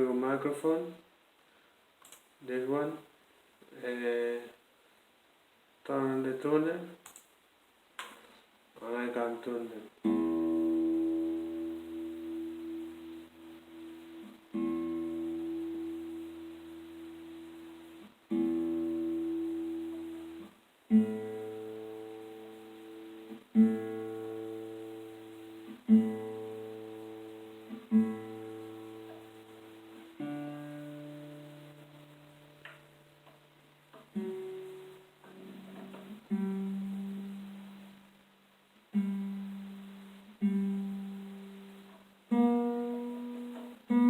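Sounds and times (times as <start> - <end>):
guitar strings plucked: 10.0 - 37.7, 38.9 - 44.0.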